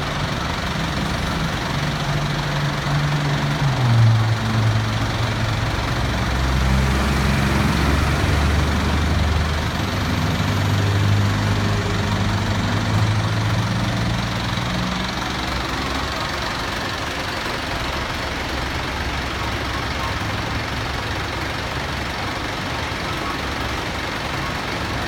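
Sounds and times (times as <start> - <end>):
vehicle engine idling: 0.0 - 25.0.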